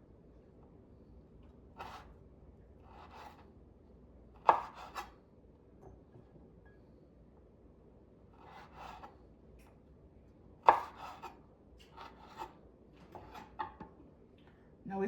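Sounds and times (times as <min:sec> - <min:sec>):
knife scraping cutting board: 0:01.8 - 0:02.2, 0:02.8 - 0:03.5, 0:04.4 - 0:05.2, 0:08.4 - 0:09.2, 0:10.6 - 0:13.8.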